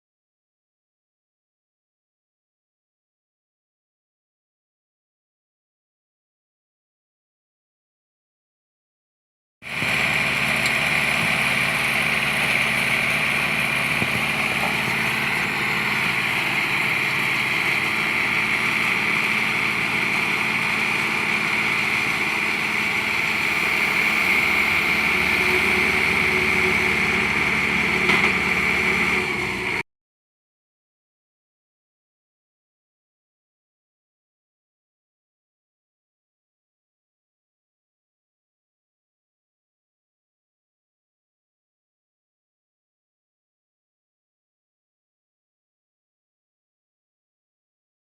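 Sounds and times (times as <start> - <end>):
construction machinery engine running: 9.7 - 29.8
high whine: 9.8 - 29.8.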